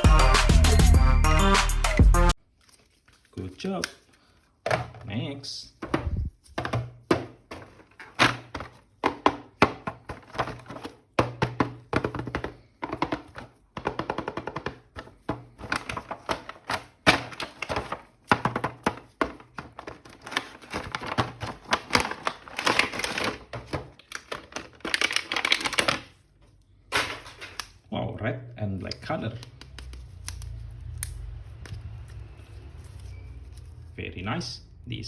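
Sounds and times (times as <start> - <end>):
plastic packaging rustling: 2.4 - 27.8
plastic packaging clicks and taps: 5.8 - 26.1, 28.9 - 32.0.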